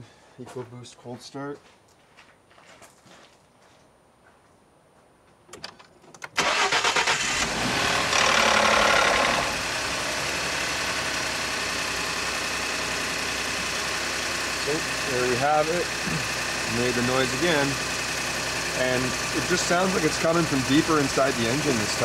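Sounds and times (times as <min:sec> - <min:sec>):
engine cranking and idling: 0:06.4 - 0:22.0.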